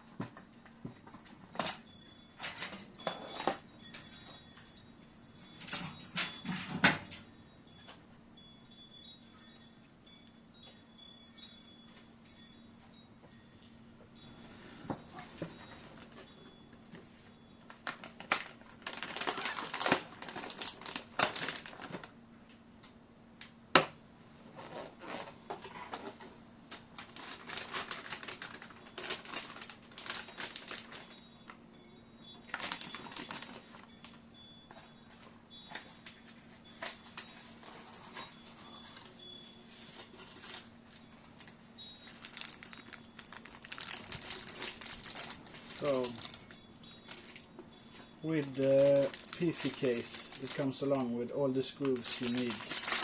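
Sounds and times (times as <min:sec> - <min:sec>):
packaging rustling and crinkling: 0:00.1 - 0:04.7, 0:15.0 - 0:22.2, 0:24.5 - 0:31.6, 0:32.5 - 0:53.0.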